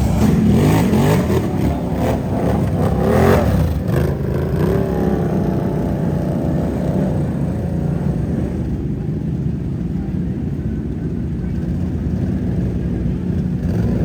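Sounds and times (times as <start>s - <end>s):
engine revving: 0.0s - 8.6s.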